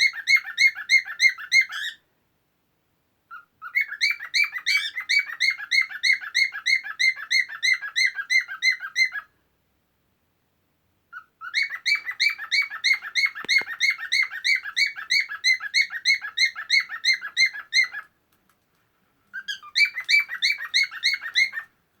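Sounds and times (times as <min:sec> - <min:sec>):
cockatiel chirping song: 0:00.0 - 0:02.0, 0:03.3 - 0:09.3, 0:11.1 - 0:18.1, 0:19.3 - 0:21.8.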